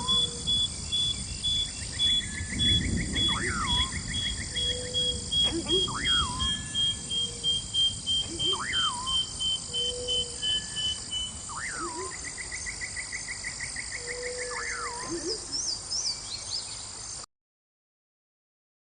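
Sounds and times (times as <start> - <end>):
high bird chirps: 0.0 - 13.2
bird trill: 0.0 - 16.8
birds whistling: 0.0 - 16.8
insects droning: 0.0 - 17.3.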